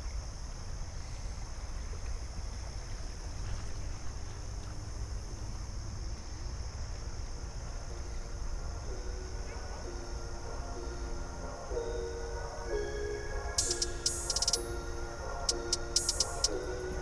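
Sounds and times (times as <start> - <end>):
high-pitched insect drone: 7.8 - 17.0.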